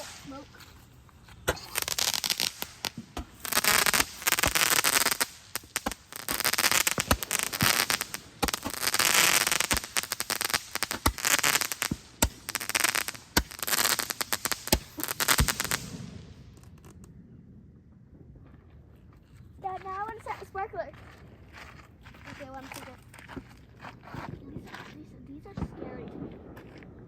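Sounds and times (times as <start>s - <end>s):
sharp firework bangs: 0.0s - 0.6s, 1.4s - 16.8s
fireworks crackling and popping: 0.0s - 17.4s, 18.2s - 20.9s, 21.9s - 27.0s.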